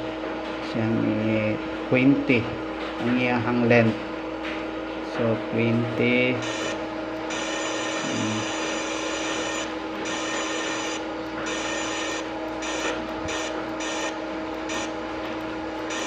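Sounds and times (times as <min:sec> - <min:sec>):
steady motor hum: 0:00.0 - 0:16.0
hissing cutting noise: 0:06.4 - 0:15.0.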